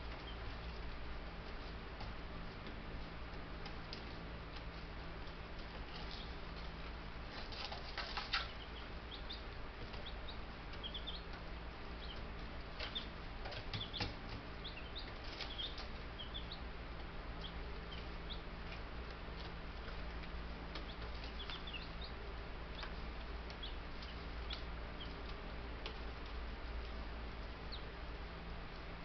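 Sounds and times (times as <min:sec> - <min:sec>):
rustling and scratching: 0:00.0 - 0:08.8, 0:12.3 - 0:16.2
chicks peeping: 0:00.0 - 0:28.8.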